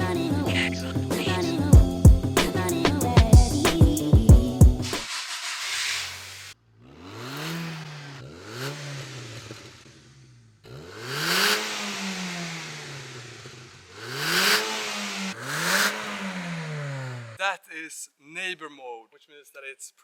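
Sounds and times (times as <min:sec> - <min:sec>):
car engine revving: 0:04.8 - 0:17.4.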